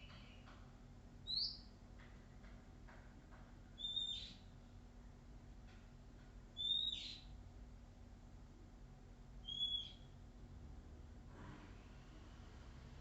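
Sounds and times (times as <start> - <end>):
bird whistled calls: 1.3 - 1.7, 3.8 - 4.4, 6.6 - 7.2, 9.4 - 10.1.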